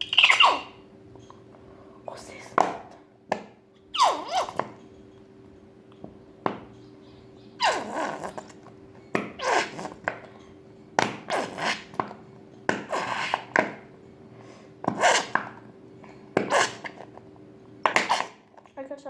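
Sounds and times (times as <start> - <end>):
glue bottle sputtering squelches: 0.0 - 0.7, 7.6 - 8.6, 9.4 - 10.0, 18.0 - 18.4.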